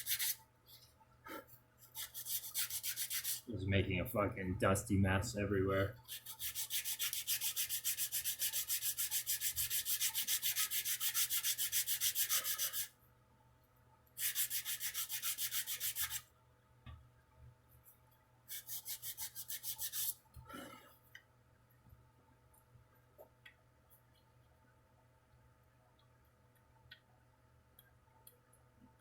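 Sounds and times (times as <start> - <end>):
sandpaper rubbing on wood: 0.0 - 0.4, 1.9 - 3.5, 6.1 - 12.9, 14.2 - 16.2, 18.5 - 20.2.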